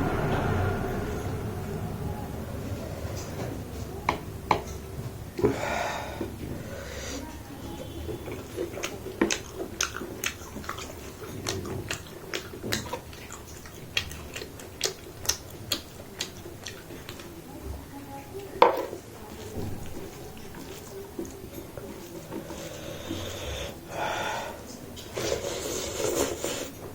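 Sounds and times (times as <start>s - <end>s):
dishes and cutlery clinking: 18.2s - 23.4s.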